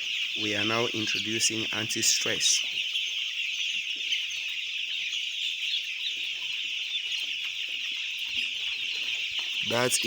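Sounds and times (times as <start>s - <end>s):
chicks peeping: 0.0s - 10.0s.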